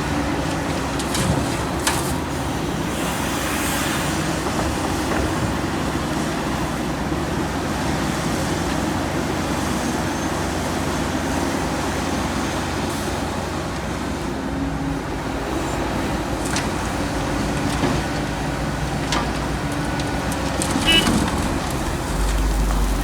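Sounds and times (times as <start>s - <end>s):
heavy diesel machinery running: 0.0s - 23.0s.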